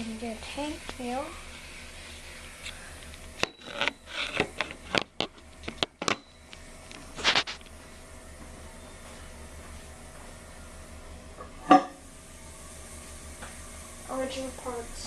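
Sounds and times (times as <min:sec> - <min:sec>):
porcelain tank lid scraping: 0:03.5 - 0:05.8.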